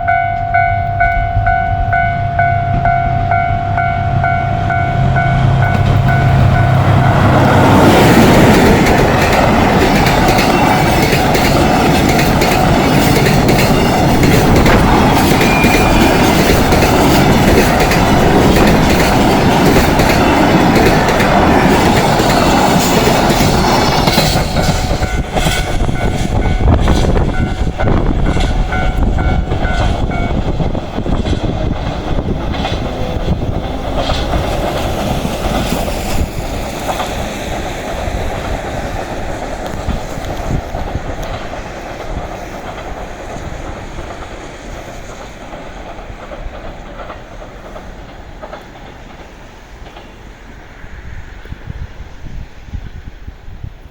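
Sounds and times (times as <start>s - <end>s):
crossing warning bell ringing: 0.0s - 34.4s
train wheels rushing on rail: 0.0s - 53.9s.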